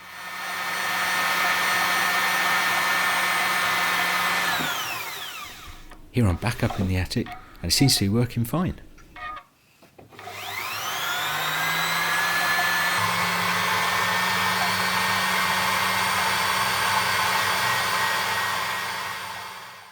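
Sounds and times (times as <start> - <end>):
spinning wheel motor whirring: 0.3 - 6.0, 10.2 - 19.9.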